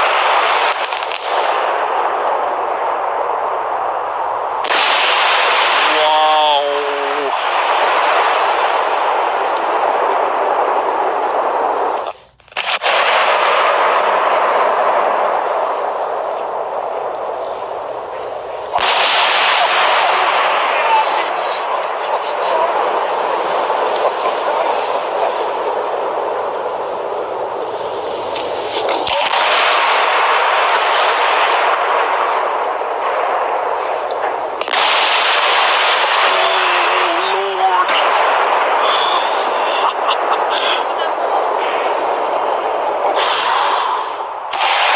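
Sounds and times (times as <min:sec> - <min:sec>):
fireworks bangs: 0:00.0 - 0:44.9
fireworks hissing rush: 0:00.0 - 0:44.9.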